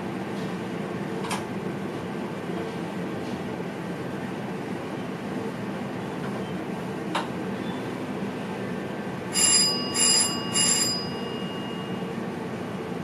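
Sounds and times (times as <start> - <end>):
electric train running: 9.3 - 12.1
bell strikes: 9.4 - 12.1.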